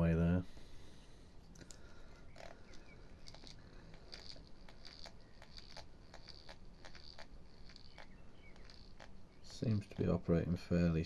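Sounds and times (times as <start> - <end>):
fishing reel ticking: 2.3 - 10.2.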